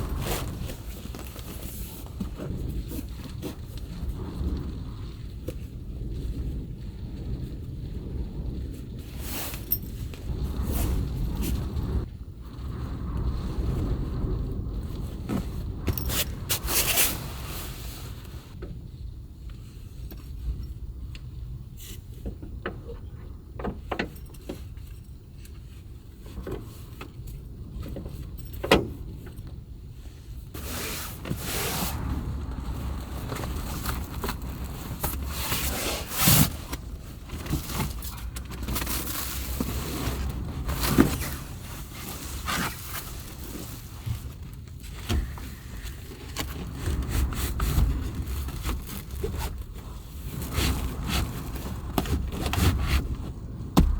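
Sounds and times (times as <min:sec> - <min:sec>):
gusting wind: 0:00.0 - 0:53.9.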